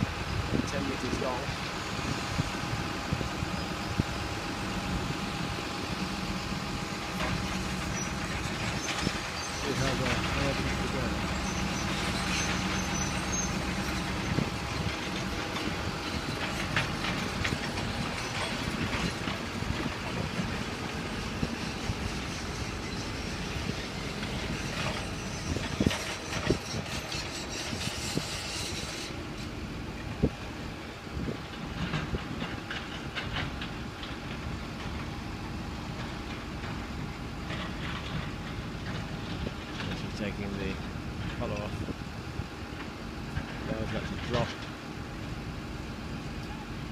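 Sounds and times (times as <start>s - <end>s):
diesel engine running: 0.0s - 46.9s
pile-driving rig hissing: 0.1s - 31.0s.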